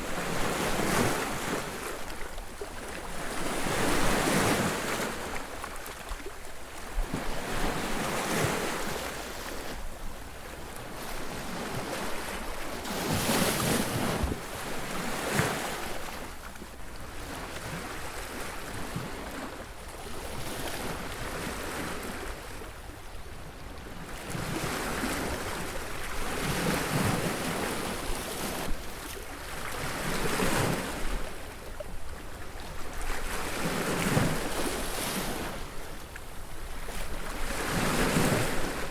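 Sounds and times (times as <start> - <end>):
roar of the sea: 0.0 - 38.9
waves crashing on beach: 33.1 - 38.9.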